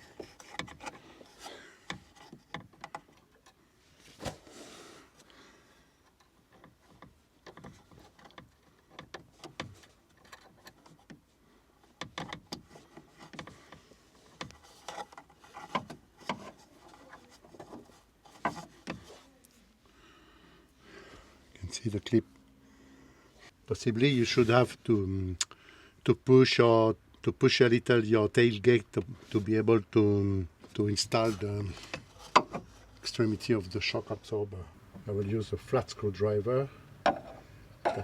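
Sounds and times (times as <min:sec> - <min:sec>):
hands clicking and rubbing fittings: 0:00.0 - 0:03.6, 0:06.0 - 0:19.2.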